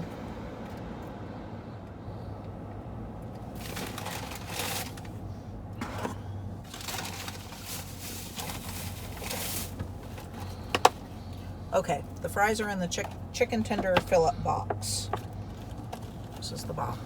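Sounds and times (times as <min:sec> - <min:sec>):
low steady hum: 0:00.0 - 0:17.0
paper bag and boxes rustling: 0:03.5 - 0:05.2, 0:05.8 - 0:10.7.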